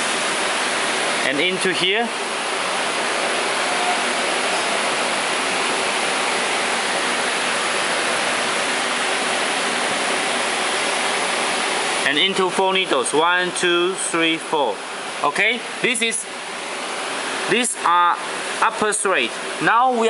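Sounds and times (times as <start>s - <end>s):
steady hiss: 0.0s - 20.0s.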